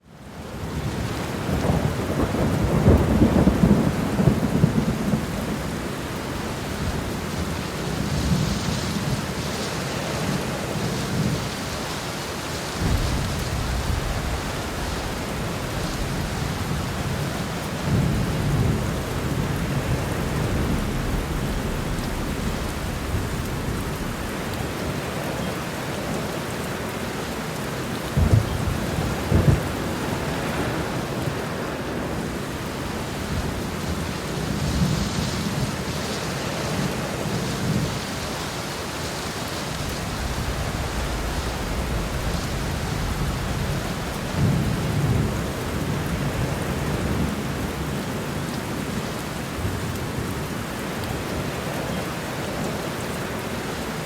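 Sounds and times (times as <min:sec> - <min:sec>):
heavy rain pouring: 0:00.0 - 0:54.0
thunder rumbling: 0:00.8 - 0:11.6, 0:12.6 - 0:26.6, 0:27.9 - 0:31.4, 0:39.6 - 0:48.9.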